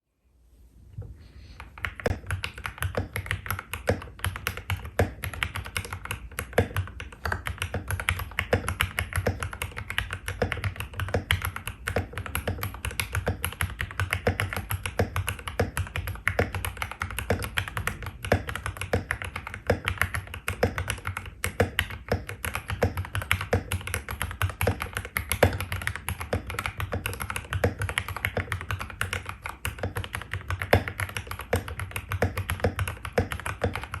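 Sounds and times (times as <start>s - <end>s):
fast mechanical keyboard typing: 1.7s - 34.0s.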